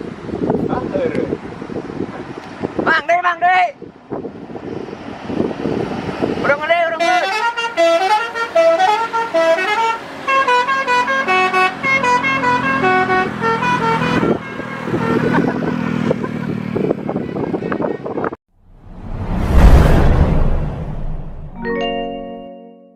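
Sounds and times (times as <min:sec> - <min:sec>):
street and vehicle noise: 0:00.0 - 0:21.7
multi-tone musical bus horn: 0:06.8 - 0:16.0.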